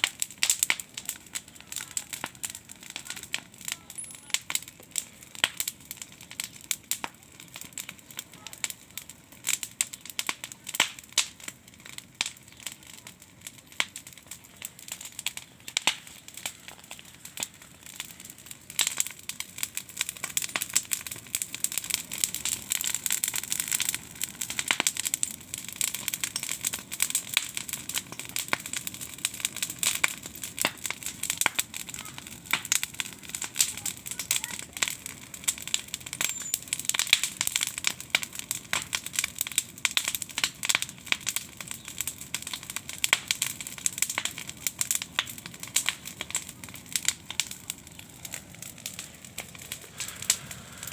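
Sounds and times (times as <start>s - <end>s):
campfire crackling and popping: 0.0s - 50.9s
steady hiss: 48.1s - 50.9s.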